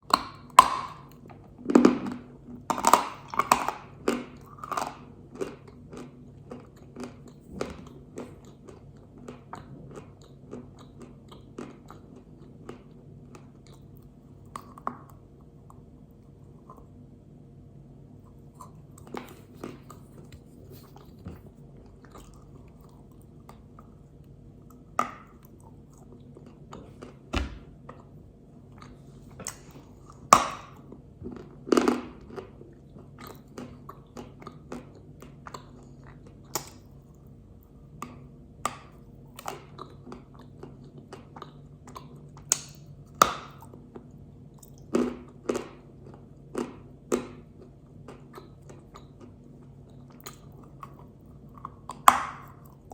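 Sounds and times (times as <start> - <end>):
faint steady hum: 0.0 - 52.9
clay being bitten and chewed: 18.3 - 24.0, 24.6 - 52.9.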